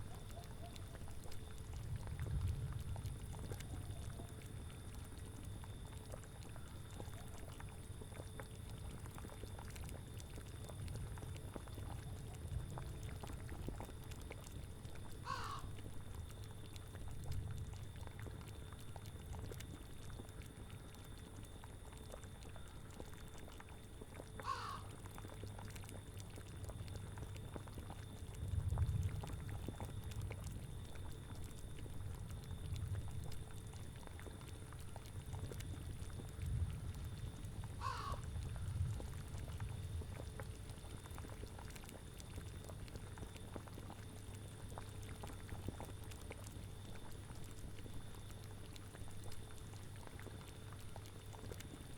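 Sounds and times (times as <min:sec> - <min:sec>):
boiling cauldron bubbling: 0:00.0 - 0:51.9
crow cawing: 0:15.2 - 0:15.7, 0:24.4 - 0:24.9, 0:37.8 - 0:38.2.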